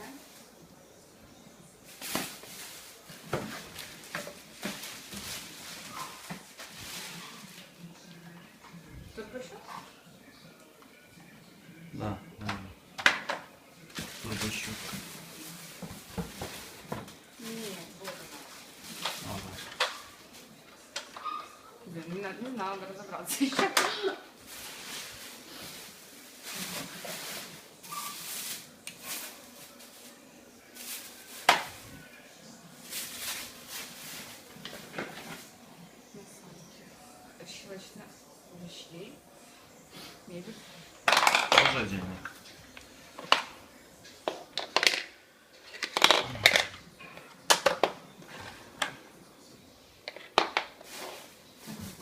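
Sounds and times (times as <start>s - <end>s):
packaging rustling: 1.9s - 7.7s.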